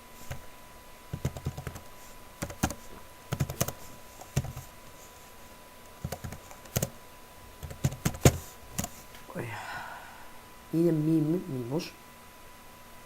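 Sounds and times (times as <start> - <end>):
typing on computer keyboard: 1.1 - 4.7, 6.0 - 7.0, 7.6 - 9.0.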